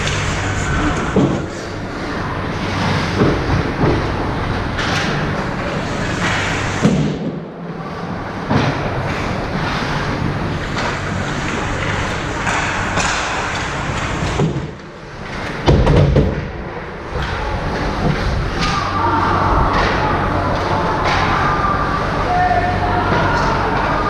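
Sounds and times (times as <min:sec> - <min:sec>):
skates scraping ice: 0:08.7 - 0:14.6
knocks and thuds: 0:15.6 - 0:16.6.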